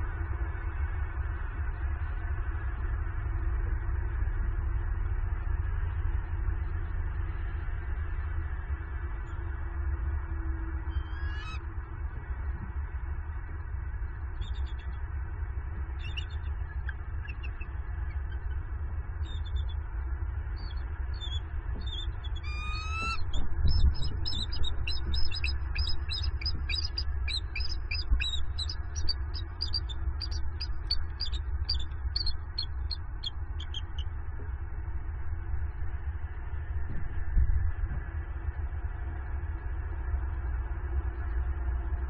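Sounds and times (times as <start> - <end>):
low rumble: 0.0 - 42.0
eagle calling: 10.9 - 11.6, 21.2 - 34.1.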